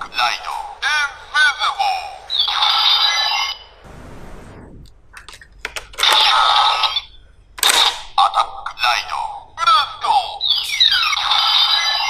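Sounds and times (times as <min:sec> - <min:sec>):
sustained electronic tone: 0:02.2 - 0:04.9
lower falling whoosh: 0:03.8 - 0:04.9.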